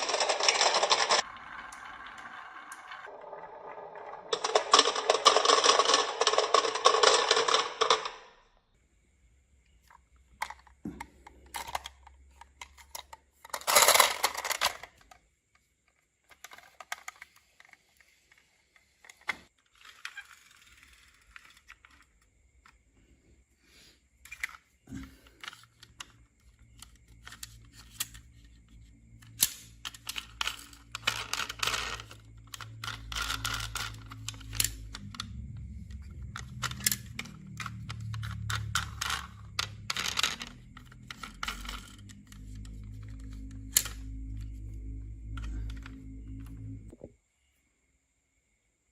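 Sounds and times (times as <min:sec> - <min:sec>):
marbles clattering on marble run: 0:00.0 - 0:08.4, 0:11.5 - 0:15.2, 0:29.3 - 0:46.7.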